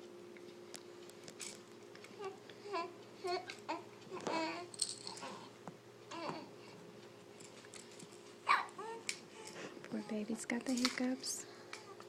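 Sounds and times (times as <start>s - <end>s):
faint steady hum: 0.0s - 12.0s
baby babbling: 2.2s - 4.7s, 6.1s - 6.5s, 8.5s - 10.1s.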